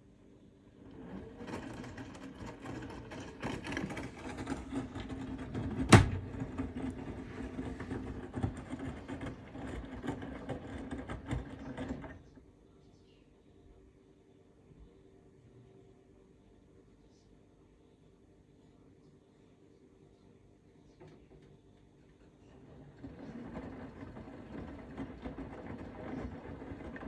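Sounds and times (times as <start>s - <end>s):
washing machine motor hum: 0.6s - 12.6s, 21.0s - 27.0s
laundry tumbling and knocking: 1.7s - 12.0s.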